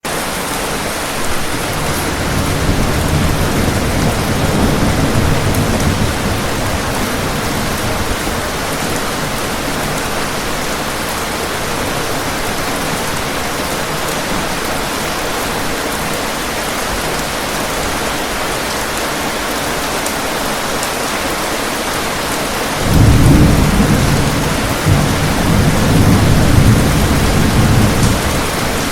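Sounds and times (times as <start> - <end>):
steady rain: 0.0 - 28.9
thunder rumbling: 1.2 - 12.9, 22.8 - 28.9.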